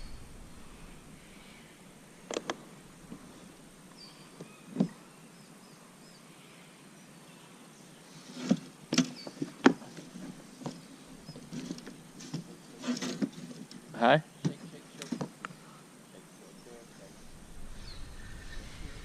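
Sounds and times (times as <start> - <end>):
faint bird chirps: 0.0 - 2.3, 14.2 - 19.0.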